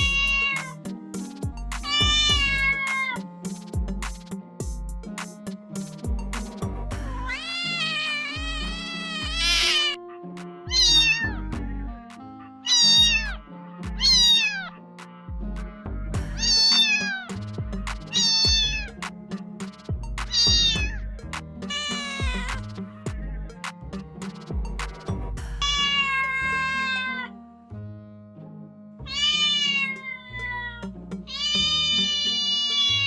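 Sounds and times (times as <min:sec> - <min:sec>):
kitten meowing: 0:00.0 - 0:00.8, 0:01.8 - 0:03.3, 0:07.1 - 0:10.0, 0:10.7 - 0:12.0, 0:12.6 - 0:14.7, 0:16.4 - 0:17.4, 0:18.1 - 0:18.9, 0:20.3 - 0:21.0, 0:21.7 - 0:23.4, 0:25.6 - 0:27.3, 0:29.1 - 0:33.0
background music with steady beat: 0:00.0 - 0:27.1, 0:29.1 - 0:33.0.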